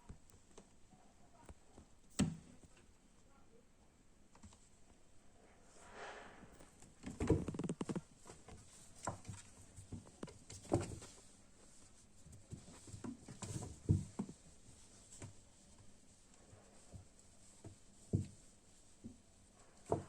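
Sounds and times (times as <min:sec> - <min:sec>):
kittens play-fighting: 0:07.0 - 0:20.0.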